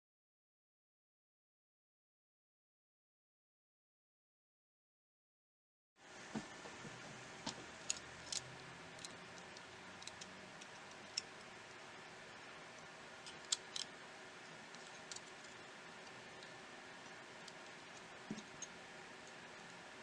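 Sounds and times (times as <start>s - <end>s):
faint steady hiss: 6.0s - 20.0s
small tools clicking: 7.8s - 11.5s, 13.2s - 14.0s, 14.7s - 19.4s.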